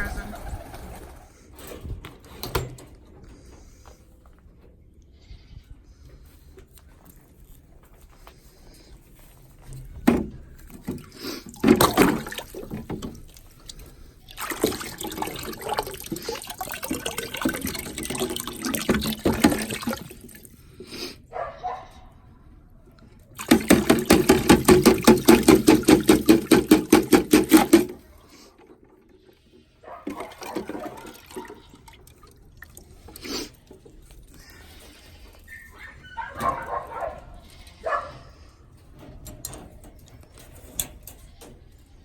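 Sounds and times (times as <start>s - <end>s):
faucet water running into container: 10.9s - 20.6s, 23.4s - 28.1s, 30.1s - 33.7s
sharp knocks: 23.5s - 28.0s.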